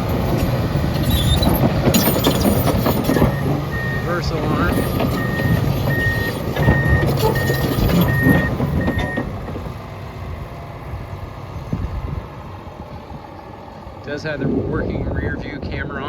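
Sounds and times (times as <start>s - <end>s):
bulldozer diesel engine: 0.0s - 16.0s
reverse alarm beeping: 3.0s - 9.3s.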